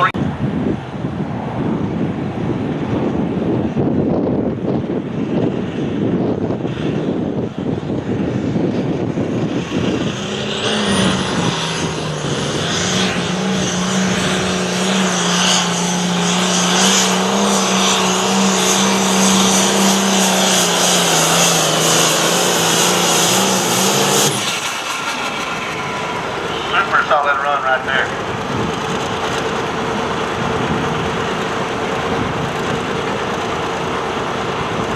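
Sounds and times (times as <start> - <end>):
tractor diesel engine running hard: 4.4 - 34.9
faint high whine: 23.6 - 28.3.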